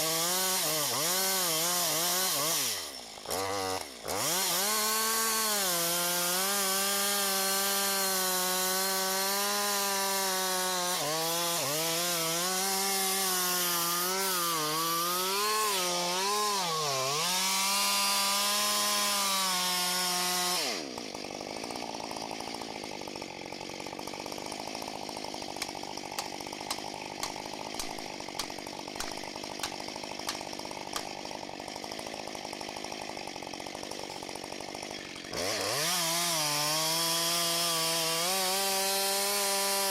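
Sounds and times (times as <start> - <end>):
chainsaw cutting wood: 0.0 - 39.9
sharp clicks: 25.6 - 31.1.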